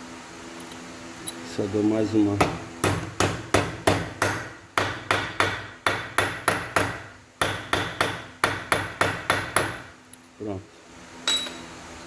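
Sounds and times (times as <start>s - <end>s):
hammer striking metal: 2.4s - 10.0s.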